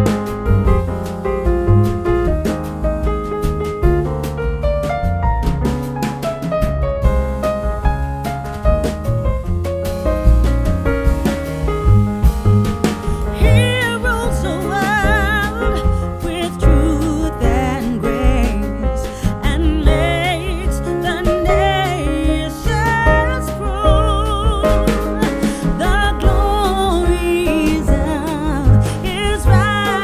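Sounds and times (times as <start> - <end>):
keyboard: 0.0 - 30.0
steady bass beat: 0.0 - 30.0
person singing with vibrato: 13.3 - 30.0.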